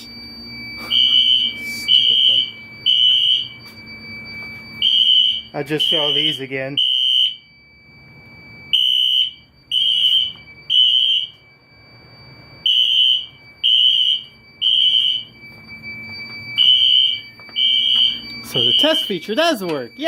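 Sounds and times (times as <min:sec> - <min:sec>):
faint steady high tone: 0:00.0 - 0:04.8, 0:15.2 - 0:20.0
fire alarm beeping: 0:00.0 - 0:20.0.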